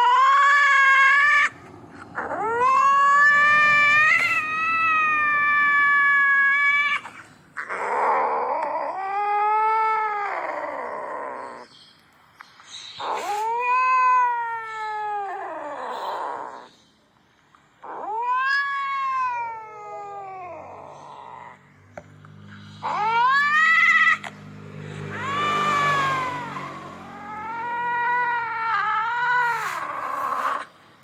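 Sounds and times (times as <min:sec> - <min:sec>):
cat yowling: 0:00.0 - 0:11.7, 0:13.0 - 0:16.8, 0:17.8 - 0:21.8, 0:22.5 - 0:31.0.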